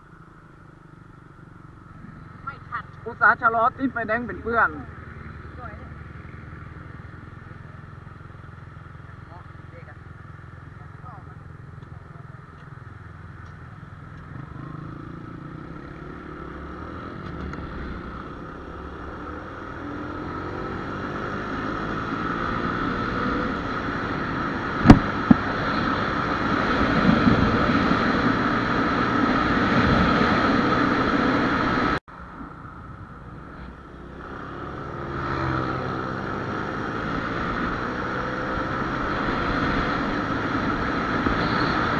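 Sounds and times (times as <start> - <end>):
motorcycle engine accelerating: 0.0 - 32.0, 33.2 - 41.9
wind noise: 24.7 - 32.0.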